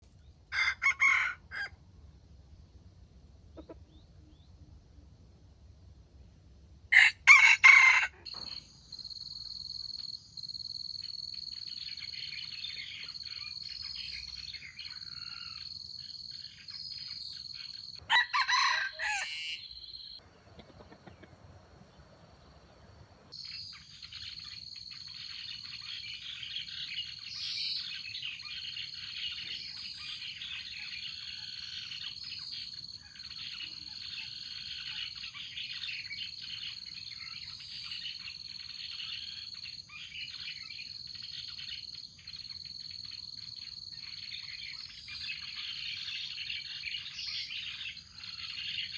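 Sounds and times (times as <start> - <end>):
jungle fowl crowing: 0.5 - 1.8, 6.9 - 8.6, 14.8 - 15.7, 18.0 - 19.8
birds chirping: 11.1 - 42.7.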